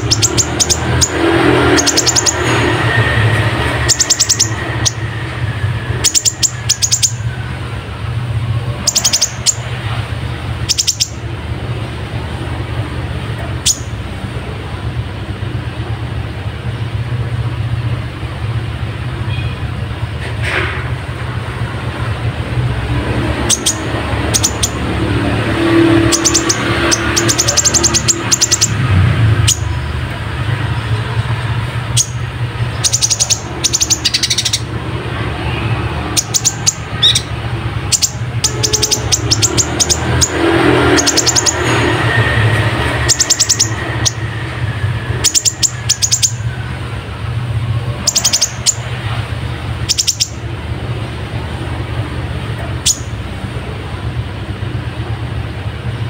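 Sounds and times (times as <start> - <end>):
bird singing high trills: 0.0 - 7.4, 8.7 - 9.8, 10.6 - 11.3, 13.6 - 14.0, 23.3 - 29.9, 31.8 - 46.6, 47.9 - 49.0, 49.8 - 50.5, 52.8 - 53.2.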